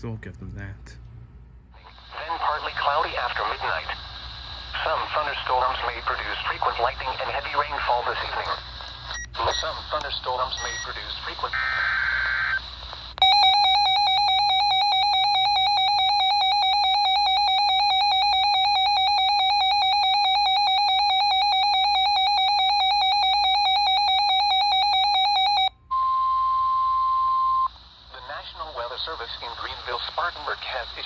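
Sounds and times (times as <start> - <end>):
steady warning alarm tone: 10.5 - 10.9, 13.2 - 27.7.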